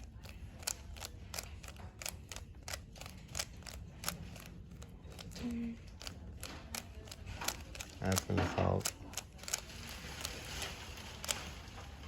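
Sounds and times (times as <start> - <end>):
puzzle cube clicking: 0.0 - 5.4.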